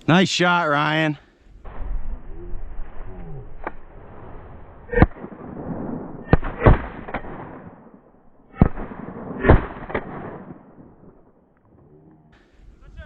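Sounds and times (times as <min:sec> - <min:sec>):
shotgun blasts: 0:03.6 - 0:11.4.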